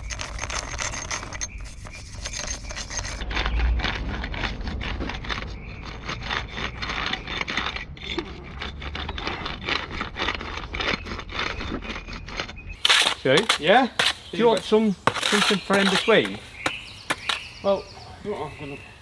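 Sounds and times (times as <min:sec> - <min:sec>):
trowel scraping and knocking bricks: 0:12.8 - 0:17.7.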